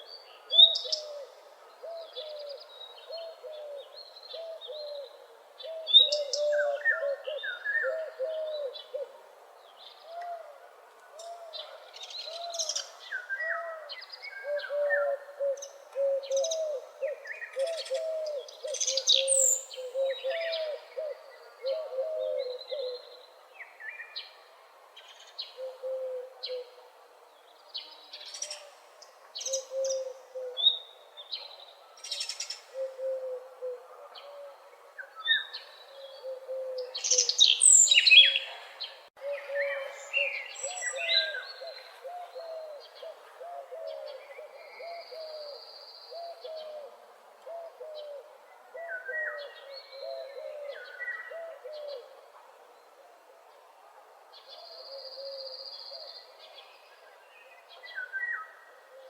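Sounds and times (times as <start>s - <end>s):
birds chirping and trilling: 11.2s - 23.9s, 32.0s - 46.8s.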